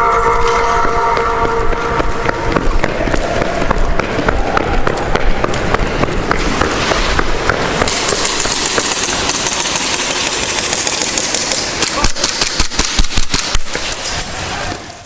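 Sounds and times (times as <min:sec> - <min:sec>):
steady rush of noise: 0:00.0 - 0:15.0
airsoft gun cracks: 0:07.8 - 0:13.8.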